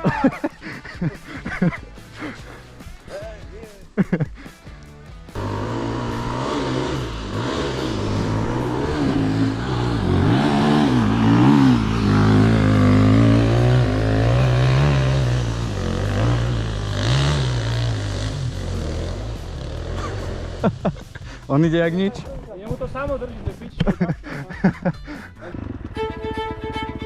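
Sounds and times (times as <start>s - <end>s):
dirt bike engine revving: 5.3s - 21.6s.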